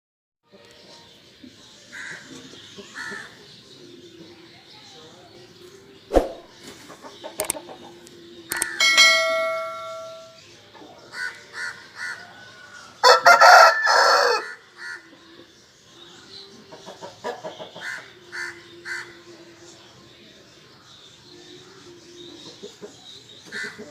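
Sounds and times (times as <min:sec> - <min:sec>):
metallic clang: 0:08.8 - 0:10.4
rooster crowing: 0:12.5 - 0:14.6.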